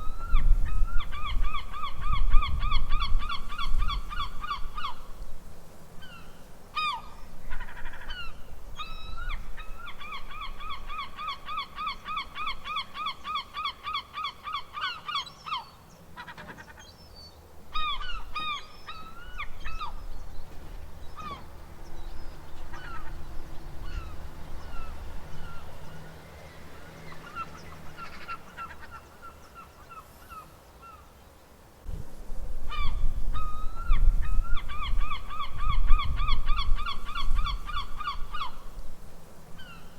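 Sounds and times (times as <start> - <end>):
gulls calling: 6.0 - 31.2, 32.7 - 38.8.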